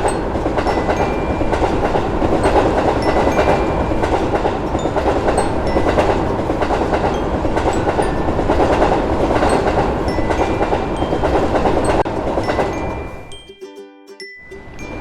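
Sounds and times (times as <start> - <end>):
train wheels rumbling on rails: 0.0 - 13.3
high wheel squeaks: 0.0 - 13.5.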